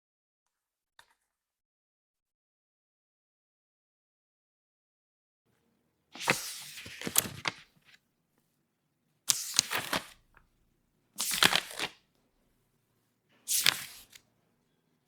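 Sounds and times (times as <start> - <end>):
book pages flipping: 6.2 - 8.0, 9.3 - 10.5, 11.2 - 12.0, 13.4 - 14.2.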